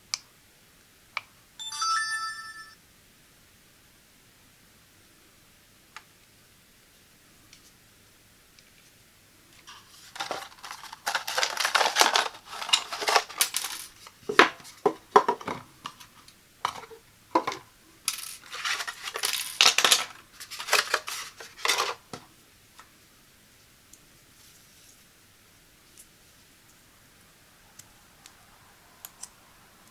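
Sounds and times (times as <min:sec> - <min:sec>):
packaging rustling: 0:09.6 - 0:22.1
hard plastic pieces clicking: 0:09.6 - 0:22.2.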